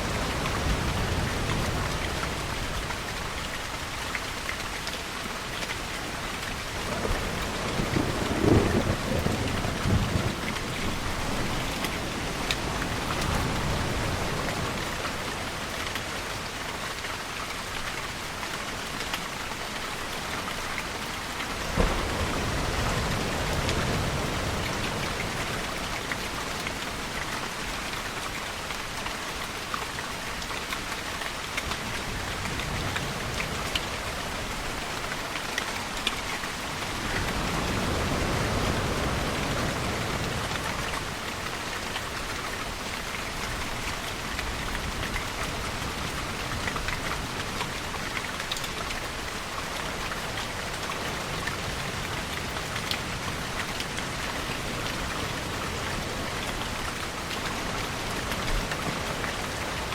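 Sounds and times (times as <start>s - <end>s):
rain falling and dripping: 0.0s - 59.9s
distant thunder: 6.9s - 11.8s, 21.7s - 24.4s.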